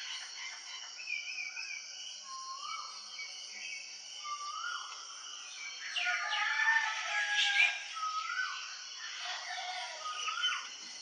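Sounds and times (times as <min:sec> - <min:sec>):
birds chirping and whistling: 0:05.6 - 0:11.0.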